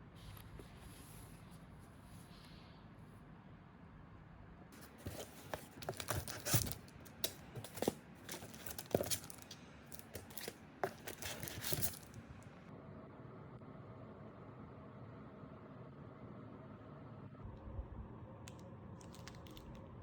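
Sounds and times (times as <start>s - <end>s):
crinkling rustling crackles: 4.8s - 12.2s.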